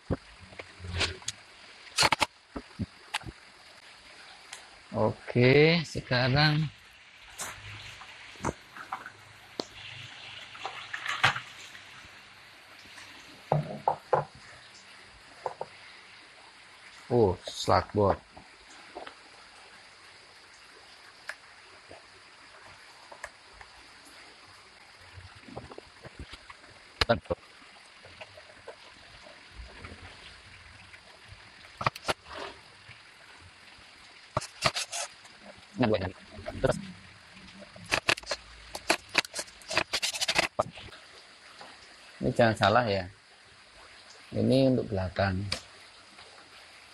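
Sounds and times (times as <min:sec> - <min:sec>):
sharp plastic clicks: 0:02.0 - 0:02.3
brief rustle: 0:37.9 - 0:40.6
plastic parts clicking: 0:37.9 - 0:40.6.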